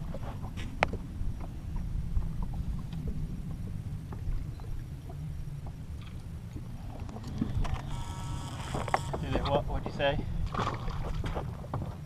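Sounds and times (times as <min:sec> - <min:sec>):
steady low rumble: 0:00.0 - 0:07.9.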